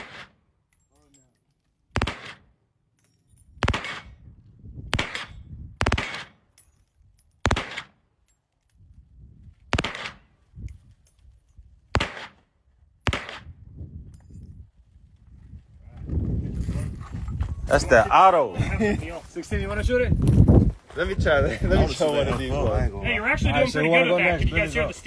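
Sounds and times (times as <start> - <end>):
gunshots: 0.0 - 0.4, 2.0 - 2.5, 3.6 - 4.2, 4.9 - 6.4, 7.4 - 8.0, 9.7 - 10.3, 11.9 - 12.4, 13.1 - 13.5.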